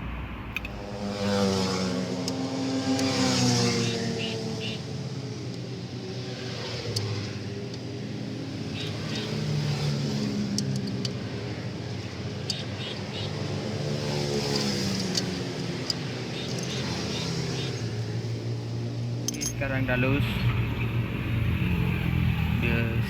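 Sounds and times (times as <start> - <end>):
passing vehicles humming: 0.0 - 23.0
wrench metallic clicks: 19.3 - 19.7.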